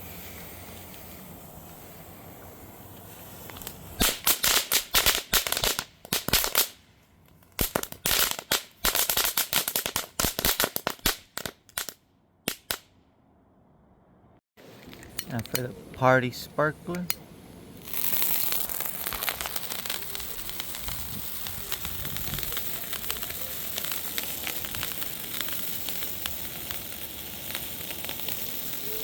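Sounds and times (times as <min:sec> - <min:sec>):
firework hissing: 0:00.0 - 0:06.9, 0:07.5 - 0:11.9, 0:17.7 - 0:29.0
firecracker bangs: 0:04.0 - 0:06.9, 0:17.8 - 0:29.0.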